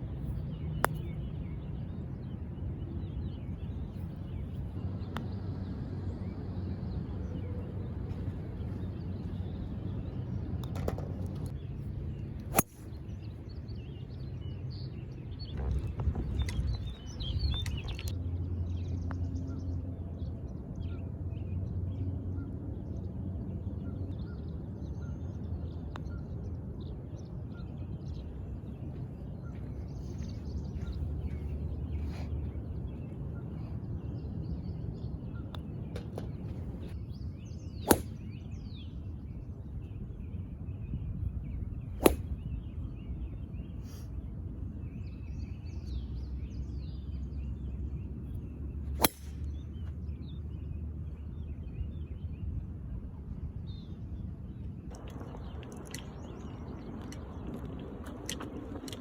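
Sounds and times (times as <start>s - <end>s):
birdsong: 0.0s - 59.0s
low outdoor rumble: 0.0s - 59.0s
golf club striking ball: 37.8s - 38.4s, 42.0s - 42.5s, 49.0s - 49.6s.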